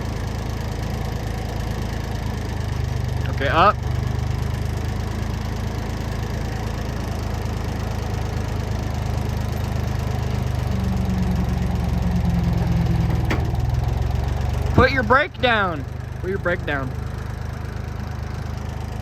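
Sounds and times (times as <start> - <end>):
loader engine running: 0.0 - 19.0
higher tone: 9.3 - 17.1.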